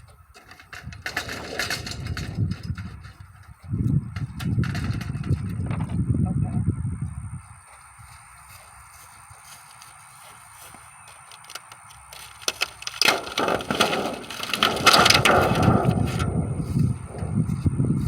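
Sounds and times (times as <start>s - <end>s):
crackling and rattling: 0.0s - 6.7s, 10.6s - 18.0s
wind gusting on microphone: 0.6s - 8.2s, 13.2s - 18.0s.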